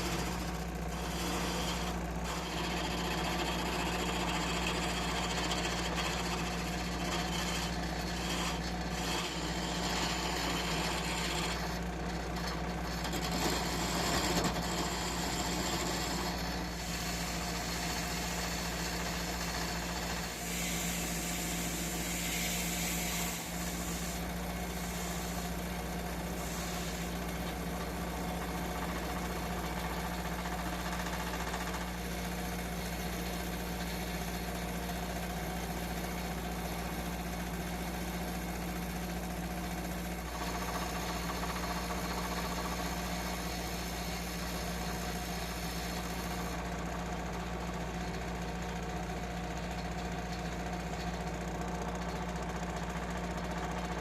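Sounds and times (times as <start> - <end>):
power tool motor humming: 6.2 - 30.7.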